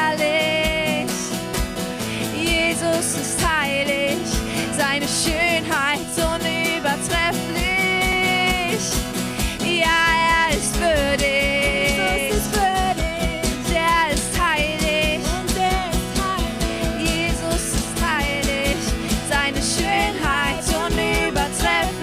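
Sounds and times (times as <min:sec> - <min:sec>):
worship band music: 0:06.8 - 0:22.0
person singing wordless notes: 0:10.1 - 0:13.8.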